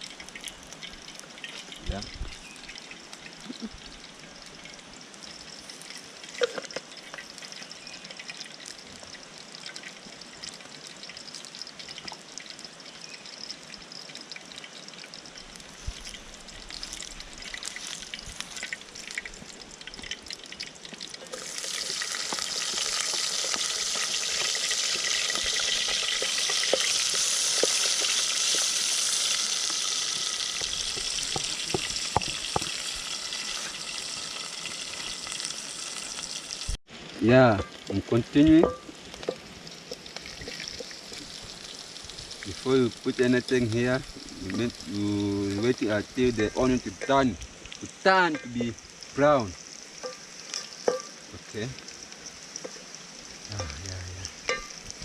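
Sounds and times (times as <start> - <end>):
oil sizzling in a pan: 0.0 - 55.0
onions frying in hot oil: 0.0 - 55.0.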